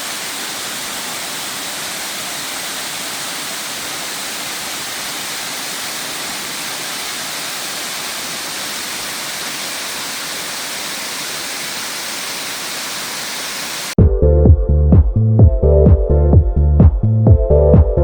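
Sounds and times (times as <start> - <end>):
rushing water: 0.0 - 14.0.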